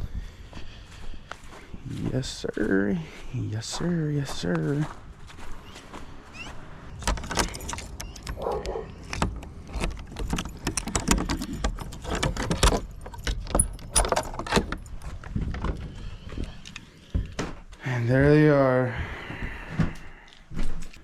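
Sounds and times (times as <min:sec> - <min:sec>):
keys jangling: 0:06.9 - 0:15.4
lock and door clicking: 0:07.0 - 0:15.8.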